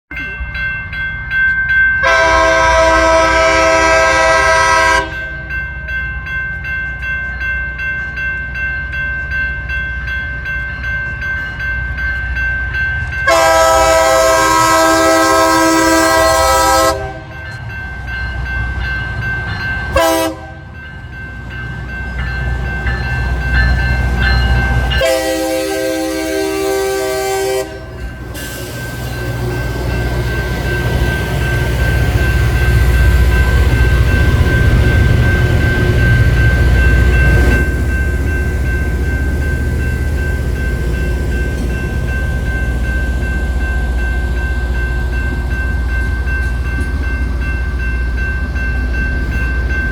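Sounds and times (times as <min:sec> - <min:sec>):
train horn signal: 0:02.0 - 0:05.5, 0:13.2 - 0:17.4, 0:20.0 - 0:20.7, 0:24.9 - 0:28.9.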